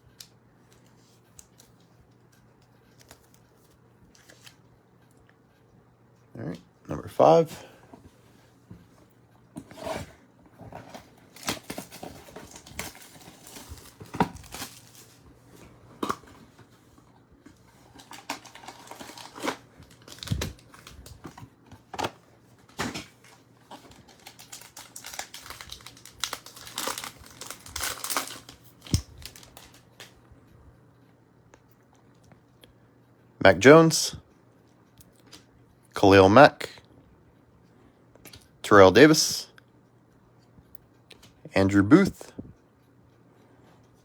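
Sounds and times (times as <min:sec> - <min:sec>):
faint steady hum: 0:00.0 - 0:44.0
wrapper tearing and crinkling: 0:11.3 - 0:15.2, 0:17.9 - 0:21.1, 0:23.2 - 0:30.1
cards crackling and clicking: 0:17.8 - 0:30.2.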